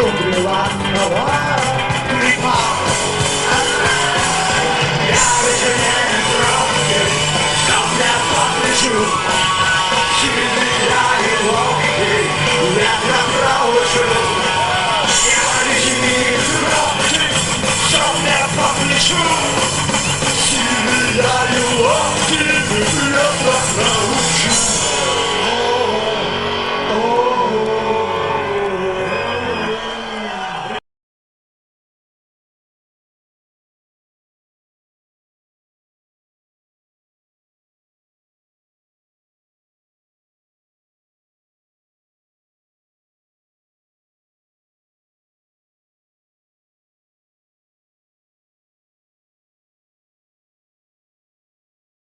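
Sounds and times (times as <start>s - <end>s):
live punk rock band: 0.0s - 30.4s.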